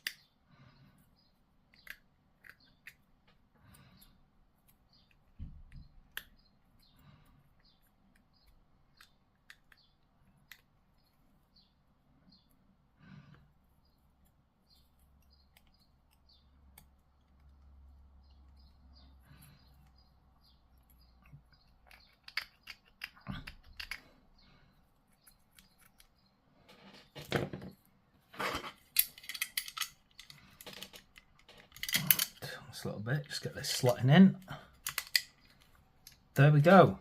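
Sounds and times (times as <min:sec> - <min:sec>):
plastic parts clicking and scraping: 0:01.7 - 0:11.1, 0:19.3 - 0:24.4, 0:25.1 - 0:32.5, 0:33.2 - 0:36.4.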